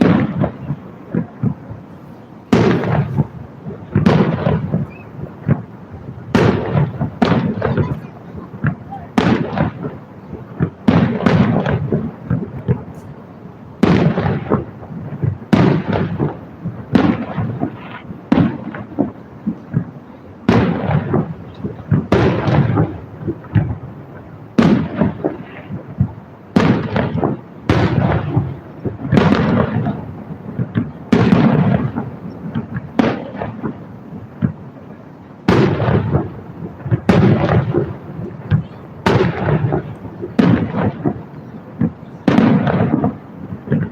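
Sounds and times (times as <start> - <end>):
fireworks bangs: 0.0 - 43.9.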